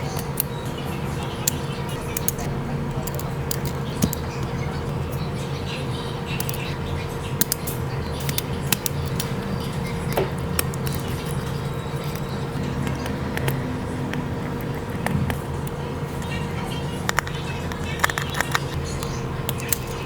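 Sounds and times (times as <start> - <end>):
steady low hum: 0.0 - 20.0
repair tools clicking and tapping: 6.4 - 6.6, 17.1 - 20.0.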